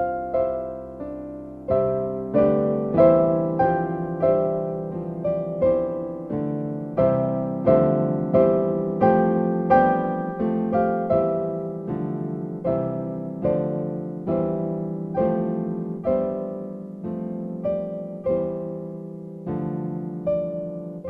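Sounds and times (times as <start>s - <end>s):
slow piano piece: 0.0s - 21.0s.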